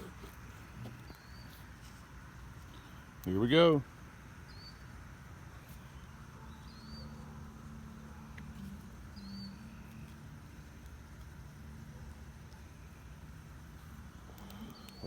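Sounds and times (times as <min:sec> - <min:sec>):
low steady hum: 0:00.0 - 0:15.0
bird chirping faintly: 0:05.6 - 0:07.5, 0:08.1 - 0:10.4, 0:14.4 - 0:15.0.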